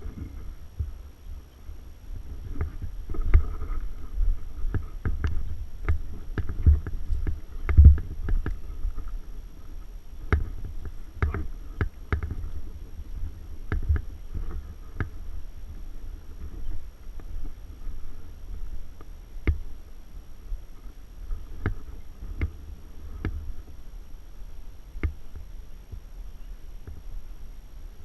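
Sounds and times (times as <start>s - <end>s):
low thuds and sharp clicks: 2.2s - 19.8s, 20.8s - 23.7s, 25.0s - 26.0s.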